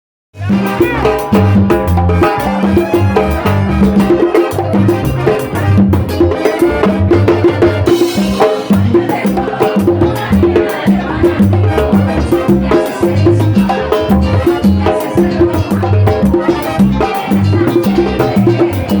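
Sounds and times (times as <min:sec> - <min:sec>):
bass line: 0:00.4 - 0:19.0
latin dance music: 0:00.4 - 0:19.0.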